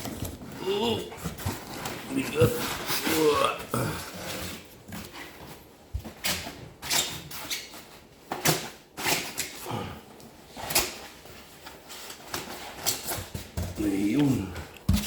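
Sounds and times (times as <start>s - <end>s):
knocks and clunks of handling: 12.3s - 15.0s.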